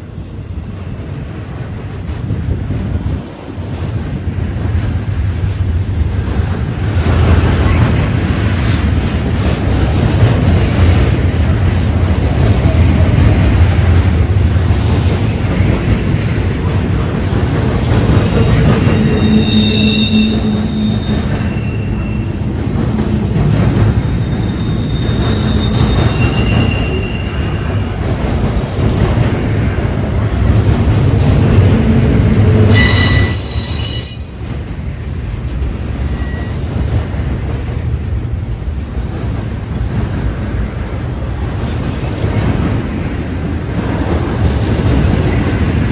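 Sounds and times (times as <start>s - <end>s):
train wheels rumbling on rail: 0.0s - 45.9s
high wheel squeals: 17.8s - 28.0s, 31.8s - 34.8s, 35.7s - 36.8s.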